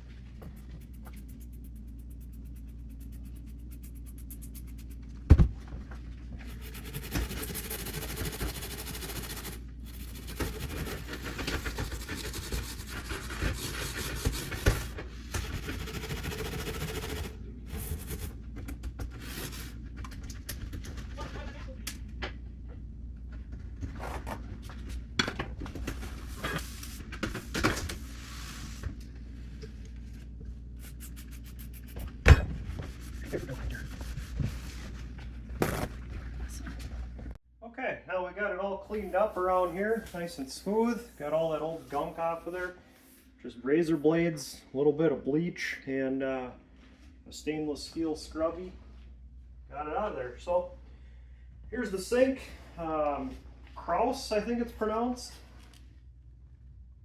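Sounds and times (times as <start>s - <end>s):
razor scraping caulk: 0.5s - 5.0s, 6.4s - 18.3s, 30.8s - 32.2s, 38.9s - 43.2s.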